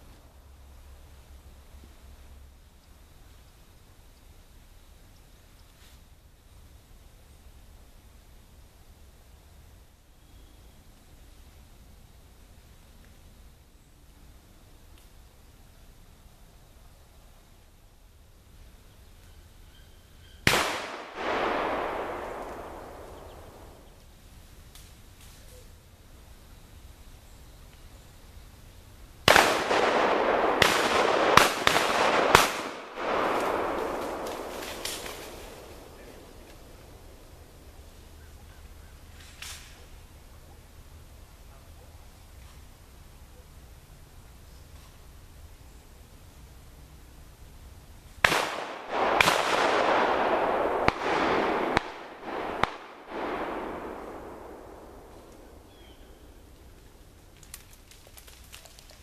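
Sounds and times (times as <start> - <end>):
shotgun shots: 20.4 - 23.8, 29.3 - 37.1, 48.2 - 55.8
rolling echo: 20.4 - 24.0, 29.3 - 38.0, 48.2 - 57.1.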